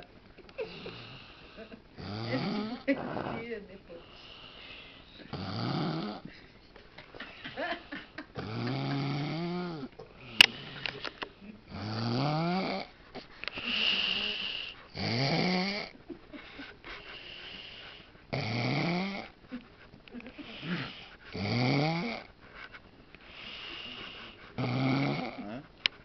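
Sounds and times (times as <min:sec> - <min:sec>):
man snoring: 0:00.7 - 0:03.4, 0:05.3 - 0:06.2, 0:08.4 - 0:11.0, 0:11.7 - 0:12.9, 0:13.7 - 0:15.9, 0:17.4 - 0:19.3, 0:20.5 - 0:22.3, 0:23.3 - 0:25.6.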